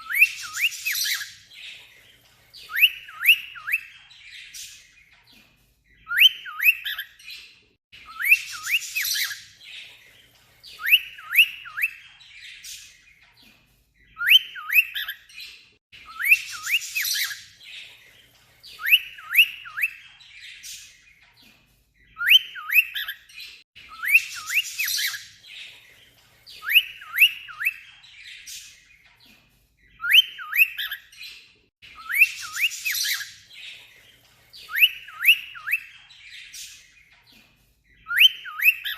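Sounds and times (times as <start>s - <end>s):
cockatiel whistled chirps: 0.0s - 1.4s, 2.6s - 4.8s, 6.0s - 7.2s, 8.0s - 9.5s, 10.7s - 12.8s, 14.2s - 15.2s, 16.0s - 17.5s, 18.7s - 20.9s, 22.1s - 23.2s, 23.8s - 25.3s, 26.6s - 28.7s, 30.0s - 31.2s, 31.9s - 33.4s, 34.6s - 36.8s, 38.0s - 38.9s.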